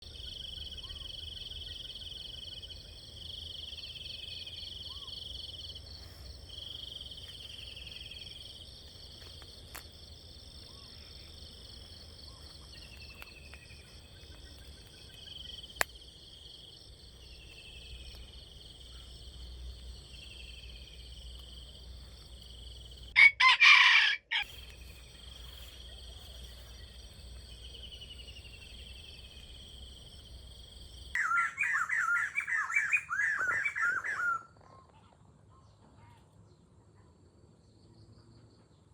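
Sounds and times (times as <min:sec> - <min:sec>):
rooster crowing: 0:23.1 - 0:24.6
short falling bird calls: 0:31.1 - 0:34.5.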